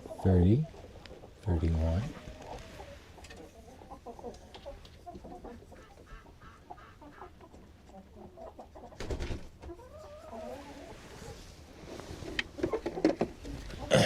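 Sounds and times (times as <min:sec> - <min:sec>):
hens clucking softly: 0:00.0 - 0:14.0.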